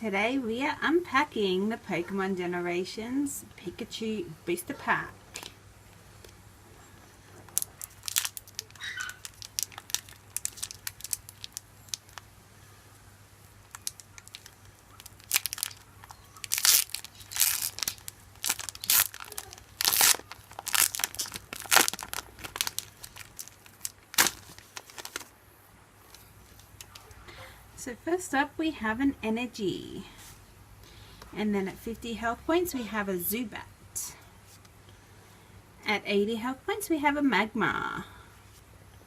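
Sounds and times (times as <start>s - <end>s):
foil wrapper crinkling and tearing: 7.4s - 12.3s, 13.4s - 25.3s.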